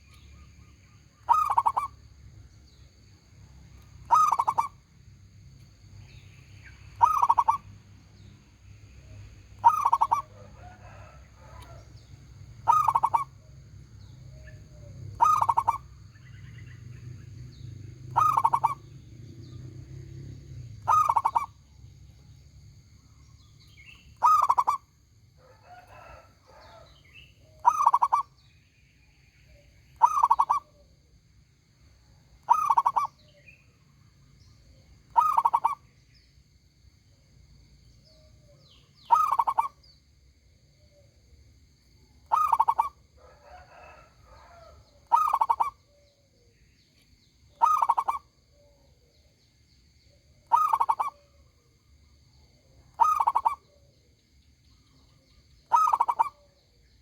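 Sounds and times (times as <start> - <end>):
dove cooing: 1.3 - 1.9, 4.0 - 4.8, 7.0 - 7.7, 9.6 - 13.5, 14.3 - 15.9, 18.1 - 19.0, 20.8 - 21.6, 24.2 - 24.8, 25.4 - 28.3, 30.0 - 30.8, 32.4 - 33.2, 35.1 - 35.8, 38.5 - 39.8, 42.3 - 46.1, 47.5 - 49.1, 50.4 - 51.3, 52.9 - 53.9, 55.6 - 56.6.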